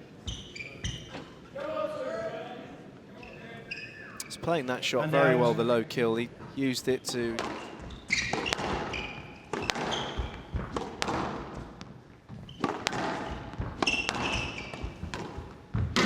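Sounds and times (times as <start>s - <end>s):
shoes squeaking on court floor: 0.1s - 1.5s, 3.1s - 4.6s, 6.4s - 16.0s
squash ball striking rackets and walls: 7.3s - 16.0s.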